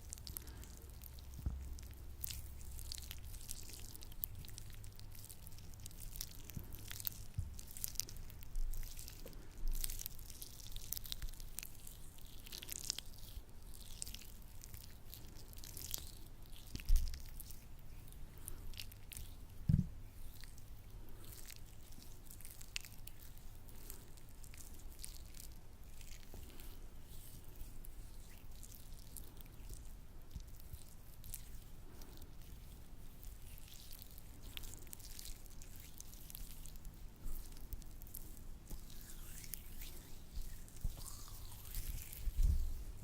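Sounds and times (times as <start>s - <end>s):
sticky lotion squishing: 0.0s - 43.0s
low thumps: 19.7s - 19.9s.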